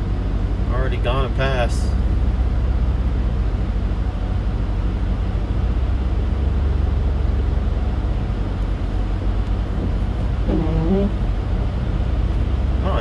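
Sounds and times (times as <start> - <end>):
vehicle road and engine rumble: 0.0 - 13.0.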